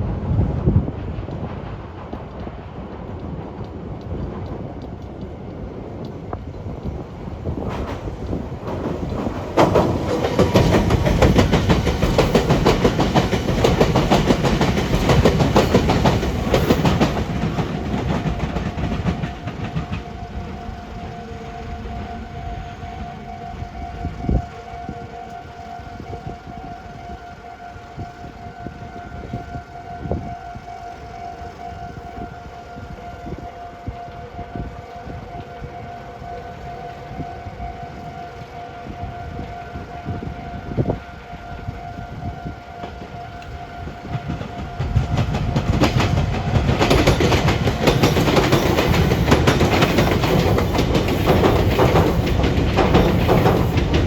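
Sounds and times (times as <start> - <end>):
train wheels clacking over rail joints: 6.8 - 21.1, 42.8 - 54.0
steady high tone: 8.8 - 54.0.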